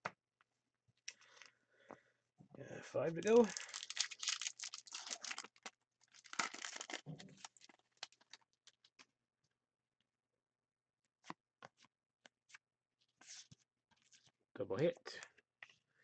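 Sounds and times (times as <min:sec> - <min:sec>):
foil pack tearing and crinkling: 0:03.5 - 0:08.8.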